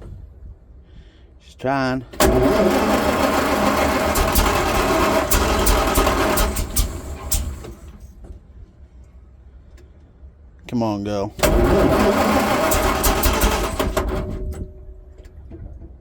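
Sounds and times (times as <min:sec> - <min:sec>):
engine cranking by starter: 0:02.1 - 0:08.5, 0:11.4 - 0:16.0
engine popping: 0:02.2 - 0:08.2, 0:11.4 - 0:15.6.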